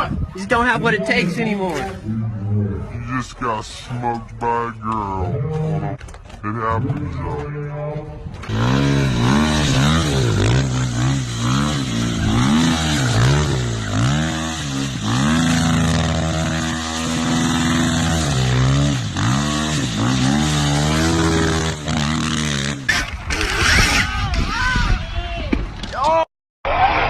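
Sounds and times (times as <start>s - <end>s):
dirt bike engine revving: 4.2s - 24.4s.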